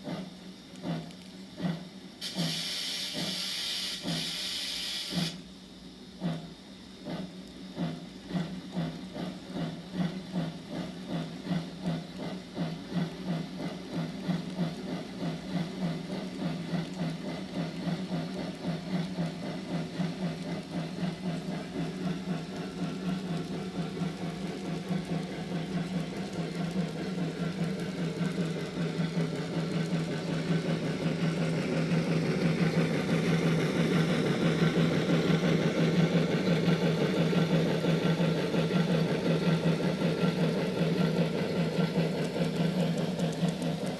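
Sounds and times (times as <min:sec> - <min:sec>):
steam locomotive chuffs from speaker: 0:00.0 - 0:05.5, 0:06.2 - 0:43.9.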